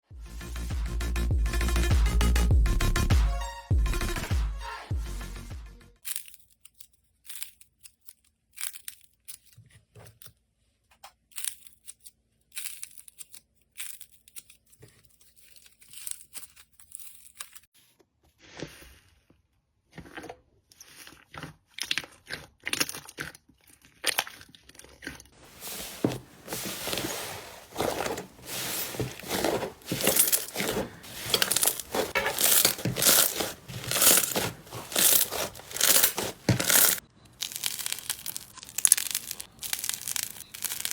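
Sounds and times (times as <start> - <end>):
slime crackling and popping: 31.3 - 40.9.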